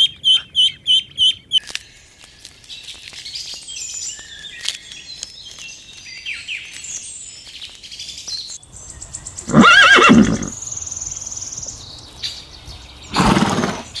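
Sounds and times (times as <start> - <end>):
small birds chirping: 0.0 - 14.0
horse whinnying: 9.5 - 10.6, 13.1 - 13.9.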